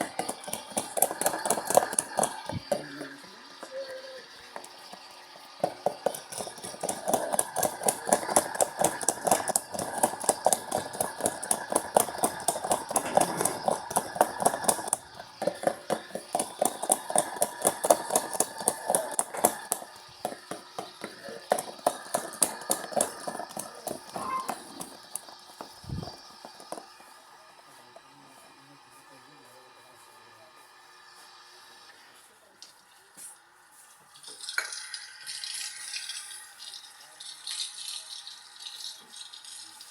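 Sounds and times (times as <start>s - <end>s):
washing machine knocking: 0.0s - 3.2s, 5.6s - 26.7s.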